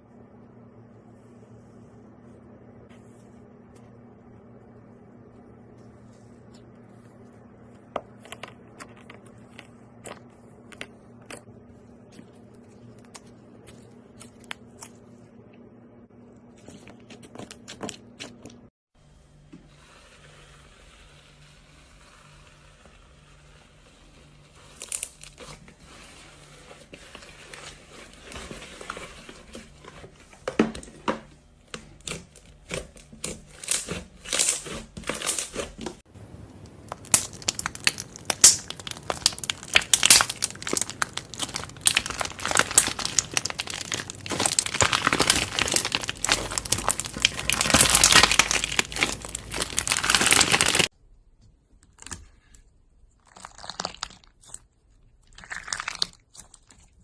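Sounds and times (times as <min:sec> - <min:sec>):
slime crackling and popping: 0:36.6 - 0:50.9, 0:53.2 - 0:54.7, 0:55.3 - 0:56.9.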